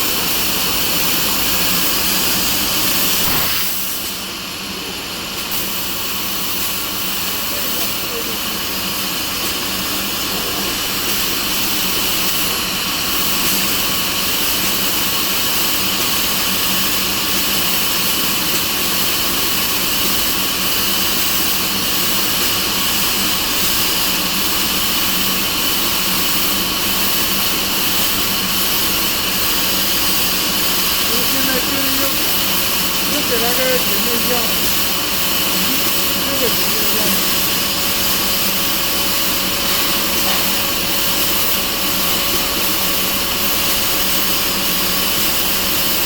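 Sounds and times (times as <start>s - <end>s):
laser cutting machine hiss: 0.0s - 46.0s.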